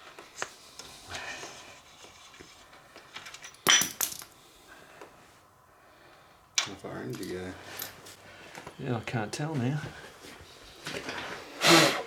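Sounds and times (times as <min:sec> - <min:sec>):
small metal tools clinking: 0:02.0 - 0:04.4, 0:06.6 - 0:08.0.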